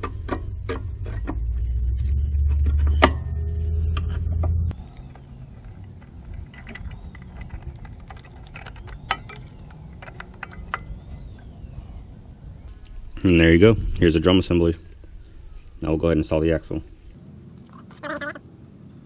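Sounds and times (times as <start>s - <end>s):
steady low background sound: 0.0s - 17.4s
metal parts and tools clinking: 3.6s - 11.5s.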